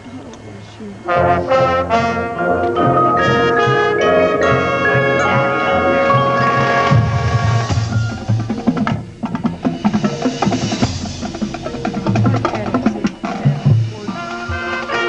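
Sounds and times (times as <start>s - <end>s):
band music: 1.0s - 15.0s
rapid drum strikes: 4.6s - 15.0s.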